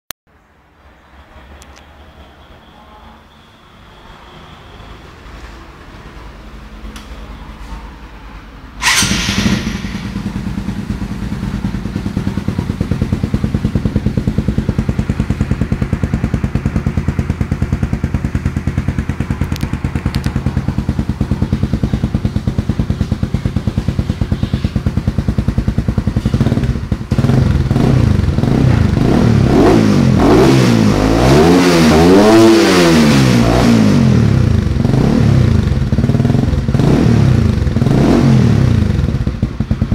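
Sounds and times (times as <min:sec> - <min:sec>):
motorcycle engine idling and revving: 0:08.6 - 0:39.9.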